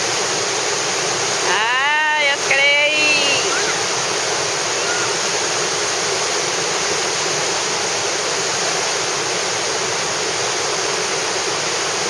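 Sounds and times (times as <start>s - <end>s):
churning whitewater rushing: 0.0s - 12.0s.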